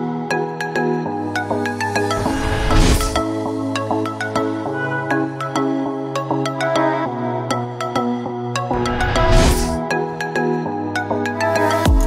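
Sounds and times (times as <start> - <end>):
electronic music with synth chords: 0.0 - 12.0.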